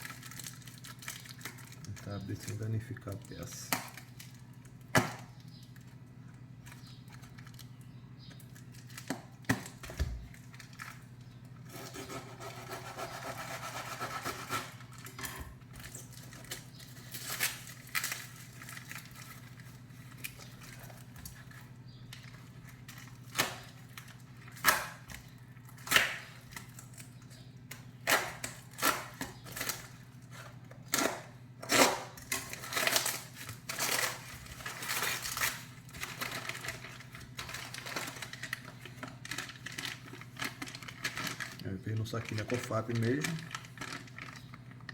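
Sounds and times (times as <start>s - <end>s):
wrapping crackling: 0.0s - 11.9s, 13.8s - 44.9s
packing tape peeling and tearing: 15.8s - 21.5s, 22.2s - 44.9s.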